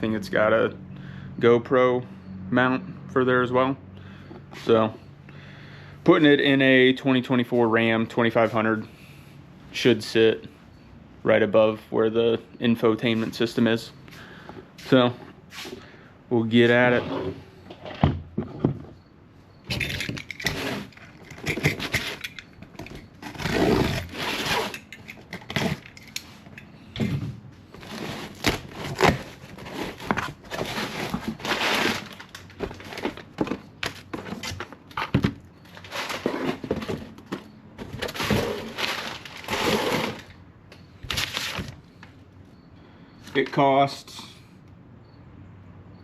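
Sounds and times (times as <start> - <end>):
box and wrapping crackling and rustling: 19.7 - 40.4, 41.0 - 42.1.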